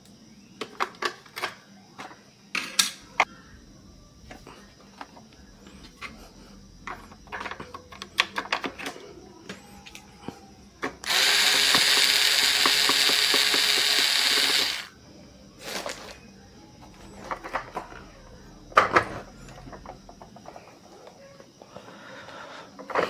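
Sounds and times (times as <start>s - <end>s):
small items clicking and knocking: 10.9s - 14.9s
small motor and gears whirring: 11.0s - 15.0s.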